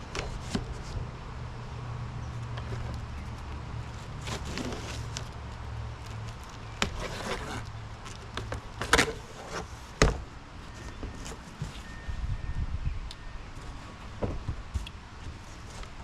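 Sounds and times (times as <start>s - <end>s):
knocks and thumps on cardboard box: 10.0s - 10.2s.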